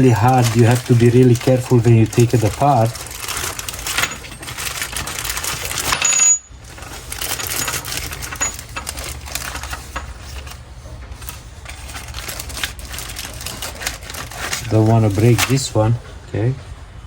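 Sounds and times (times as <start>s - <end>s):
metal parts clicking and clinking: 0.0s - 10.6s.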